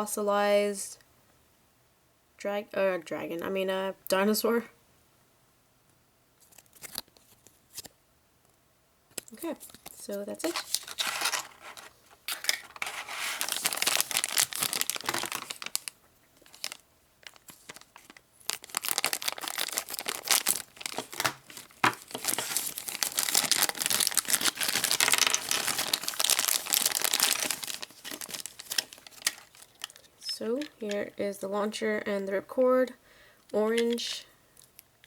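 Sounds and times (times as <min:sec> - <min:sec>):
plastic packaging crinkling and tearing: 0:09.2 - 0:31.0.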